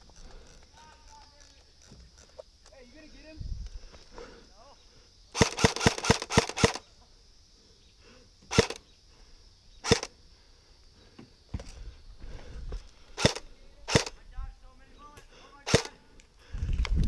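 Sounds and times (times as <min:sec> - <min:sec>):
airsoft gun shots: 0:05.4 - 0:06.8, 0:08.5 - 0:08.8, 0:09.8 - 0:10.1, 0:13.2 - 0:14.1, 0:15.7 - 0:15.9.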